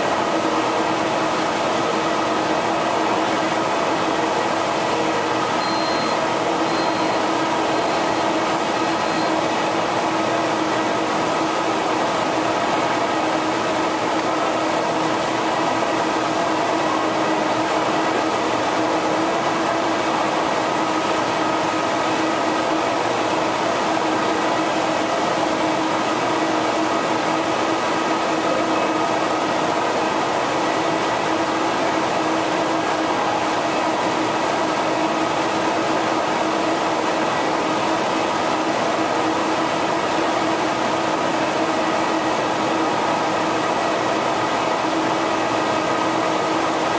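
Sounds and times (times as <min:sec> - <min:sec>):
printer humming and whirring: 0:00.0 - 0:46.9
short high beeps: 0:05.5 - 0:09.5.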